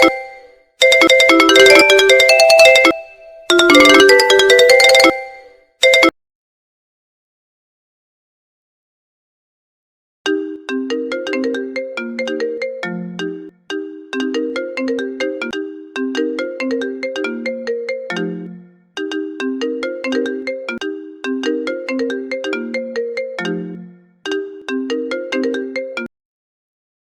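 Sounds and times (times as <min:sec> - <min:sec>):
mobile phone ringtone melody: 0:00.0 - 0:06.2.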